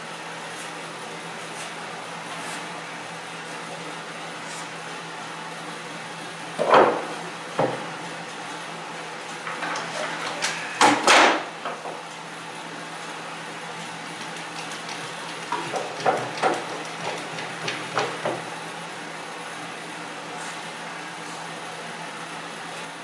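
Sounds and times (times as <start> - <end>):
steady background hum: 0.0 - 23.0
knocks of wooden cabinet parts: 6.6 - 7.9, 14.2 - 18.5.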